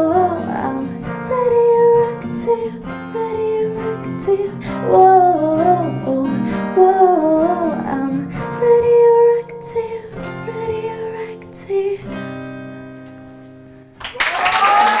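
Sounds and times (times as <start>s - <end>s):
woman singing wordless notes: 0.0s - 12.2s
acoustic guitar strumming: 0.0s - 14.0s
audience applause and cheering: 14.0s - 15.0s.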